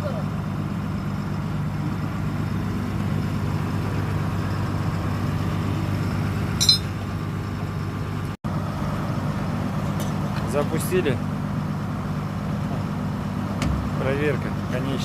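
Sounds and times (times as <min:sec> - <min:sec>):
diesel engine running: 0:00.0 - 0:15.0
sharp metallic clink: 0:06.6 - 0:07.0.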